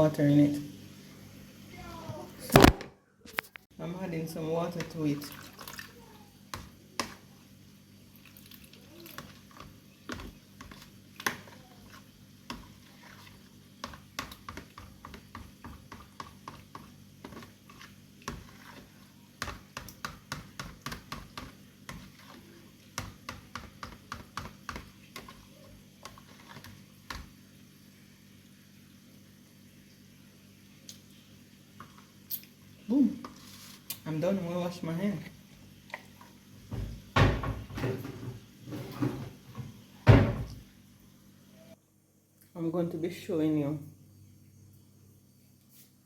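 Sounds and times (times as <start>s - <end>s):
utensil tapping in a pot: 13.8s - 25.4s.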